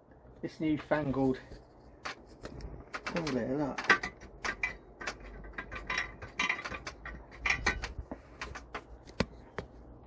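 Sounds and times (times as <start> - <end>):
mechanical clicks and knocks: 2.0 - 9.1.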